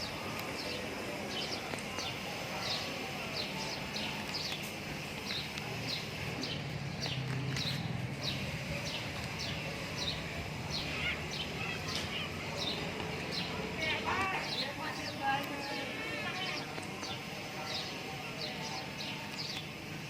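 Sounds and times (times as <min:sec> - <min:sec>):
low outdoor hum: 0:00.0 - 0:20.0
bird chirping: 0:05.2 - 0:19.7.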